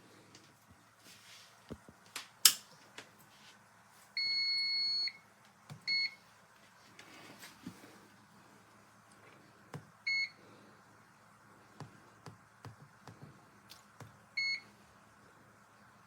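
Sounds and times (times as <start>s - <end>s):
air fryer control panel beeps: 4.2s - 5.2s, 5.8s - 6.2s, 10.1s - 10.4s, 14.4s - 14.7s.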